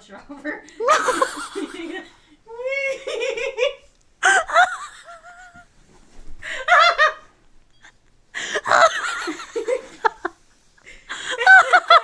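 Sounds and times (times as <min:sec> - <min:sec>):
wavering squeal of laughter: 0:07.8 - 0:09.5
high-pitched laughter: 0:08.5 - 0:10.3.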